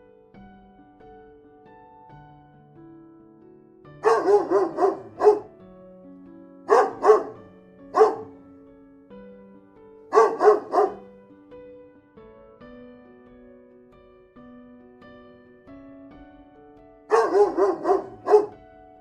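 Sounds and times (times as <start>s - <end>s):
dog barking: 4.0s - 5.5s, 6.7s - 8.4s, 10.1s - 11.1s, 17.1s - 18.6s.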